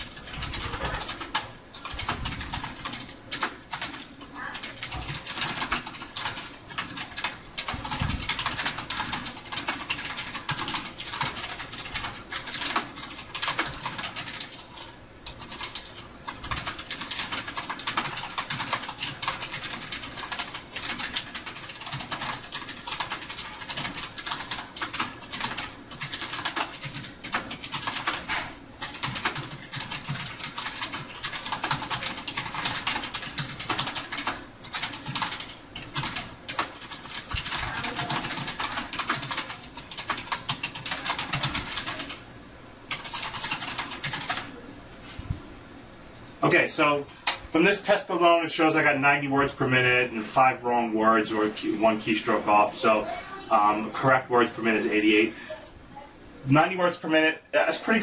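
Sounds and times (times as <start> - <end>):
fast typing on keyboard: 0.0 - 42.3, 42.9 - 44.6.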